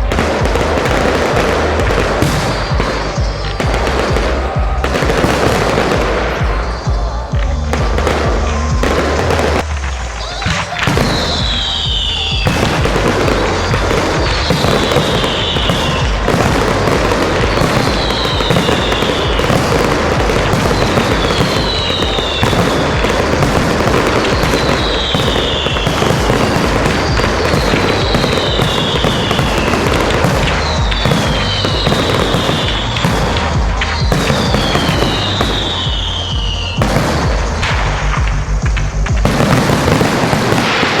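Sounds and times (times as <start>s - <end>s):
fireworks crackling and banging: 0.0s - 41.0s.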